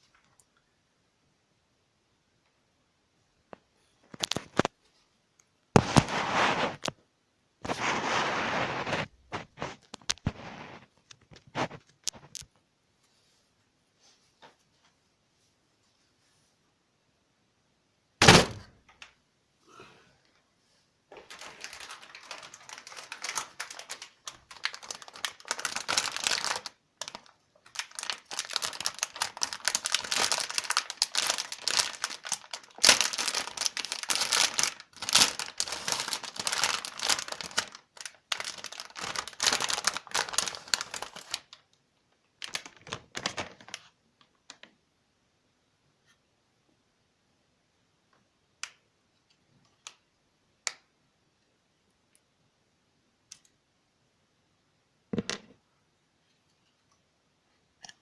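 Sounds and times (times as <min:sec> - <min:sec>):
crinkling plastic and cardboard: 0:04.0 - 0:05.1, 0:05.8 - 0:07.0, 0:07.6 - 0:12.6, 0:21.1 - 0:44.8
thump: 0:18.2 - 0:18.7.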